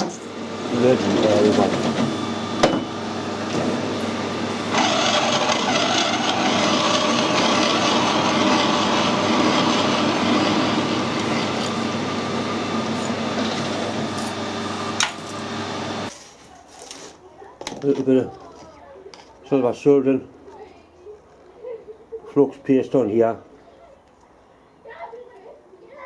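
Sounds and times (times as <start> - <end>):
electric motor humming: 0.0 - 16.1.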